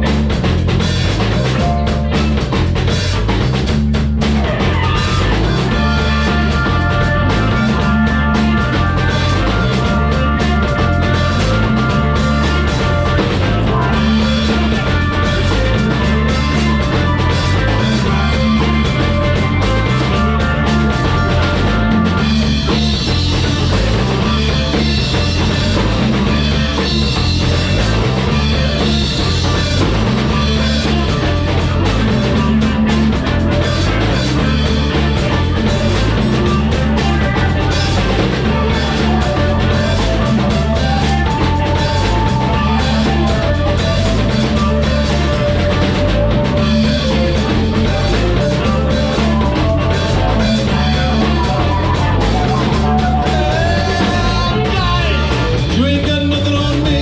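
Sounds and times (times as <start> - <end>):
drums: 0.0 - 57.0
live rock band playing: 0.0 - 57.0
repeating bass line: 0.0 - 57.0.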